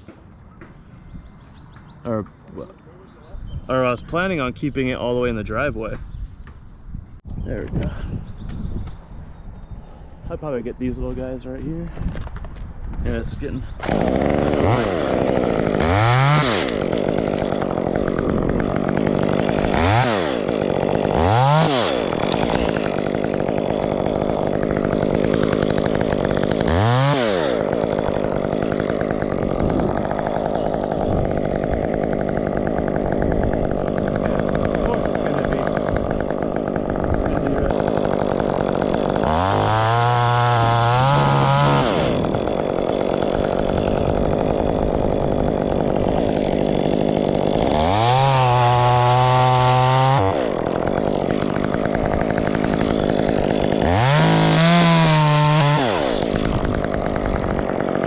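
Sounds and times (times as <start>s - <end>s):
chainsaw revving: 13.7s - 58.0s.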